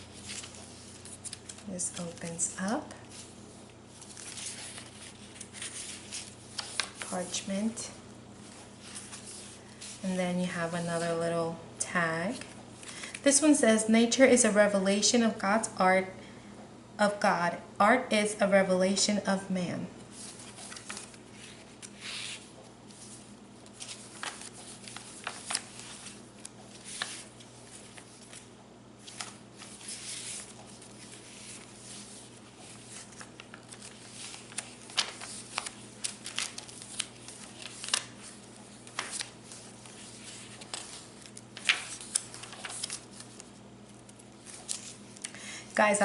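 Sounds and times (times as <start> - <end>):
paper pages rustling and flapping: 0.0 - 7.5, 8.3 - 10.1, 20.1 - 45.4.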